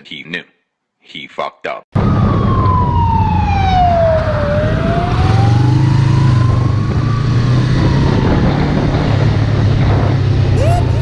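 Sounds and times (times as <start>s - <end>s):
police siren wailing: 2.0s - 9.6s, 10.5s - 11.0s
vehicle engine droning: 2.7s - 11.0s.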